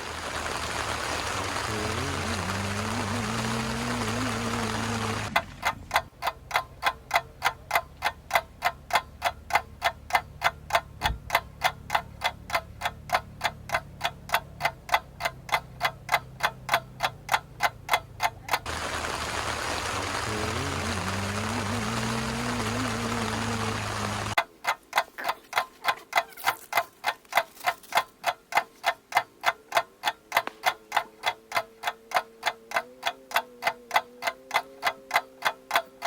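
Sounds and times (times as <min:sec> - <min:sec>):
steady hiss: 0:00.0 - 0:06.1, 0:18.6 - 0:24.4
clock ticking: 0:00.3 - 0:19.3, 0:20.0 - 0:36.0.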